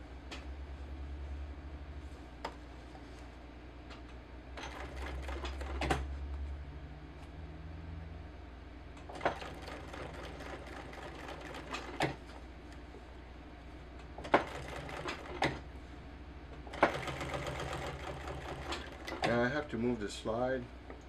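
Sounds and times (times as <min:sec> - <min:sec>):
sewing machine motor hum: 0:04.6 - 0:06.6, 0:09.0 - 0:12.4, 0:14.2 - 0:15.7, 0:16.6 - 0:19.7.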